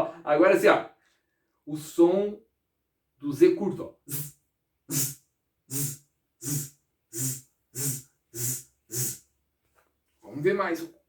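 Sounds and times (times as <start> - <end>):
man making buzzing sounds: 4.1 - 4.3, 4.9 - 9.2.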